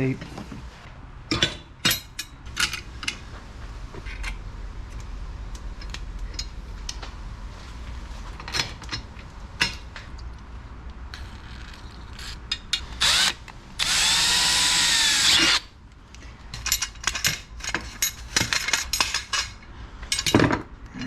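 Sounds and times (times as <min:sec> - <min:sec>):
power drill running: 0:12.2 - 0:15.7.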